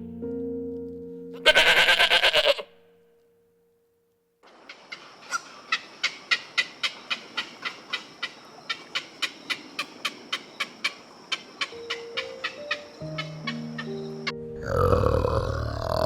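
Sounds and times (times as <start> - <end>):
steady background hiss: 3.0 - 14.6.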